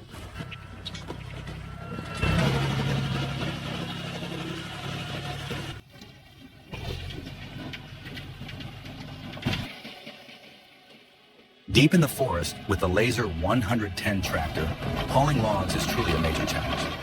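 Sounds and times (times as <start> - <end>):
tractor engine running: 0.0 - 11.1, 11.7 - 17.0.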